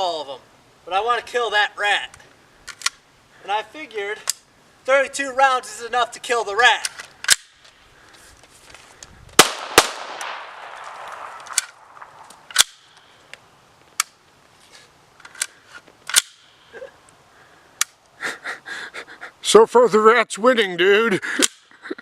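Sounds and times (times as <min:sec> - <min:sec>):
carbine single shots: 0:09.4 - 0:13.0.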